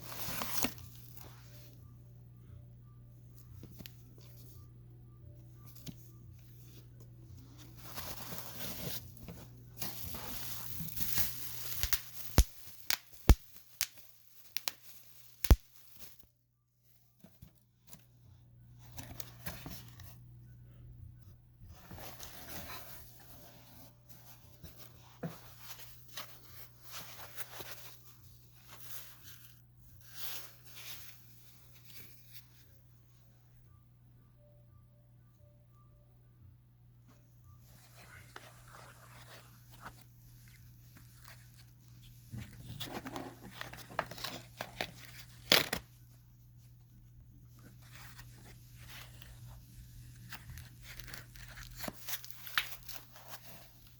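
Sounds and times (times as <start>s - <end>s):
packaging torn and crinkled: 11.0s - 16.0s.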